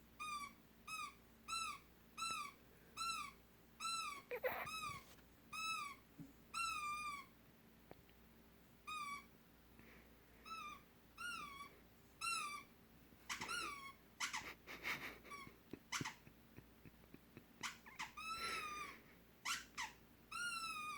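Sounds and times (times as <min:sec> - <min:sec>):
high-pitched squeaks: 0:03.9 - 0:05.0
scratchy sounds: 0:04.3 - 0:05.1.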